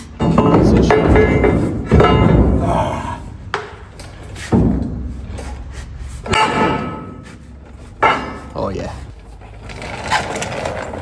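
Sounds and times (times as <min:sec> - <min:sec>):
steel plate clanking: 0:00.0 - 0:08.8.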